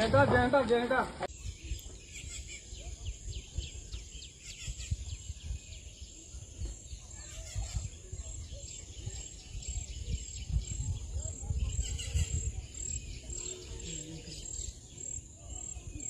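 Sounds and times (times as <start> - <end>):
birds chirping: 0.0 - 16.0
wind on microphone: 1.3 - 16.0.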